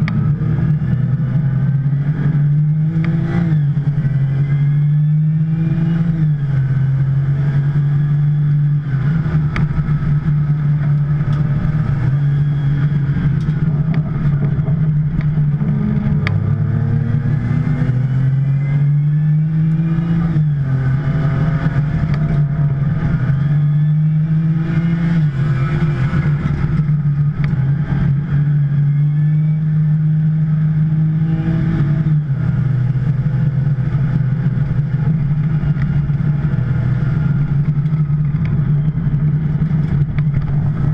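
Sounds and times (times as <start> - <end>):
sports car engine revving: 0.0 - 40.9.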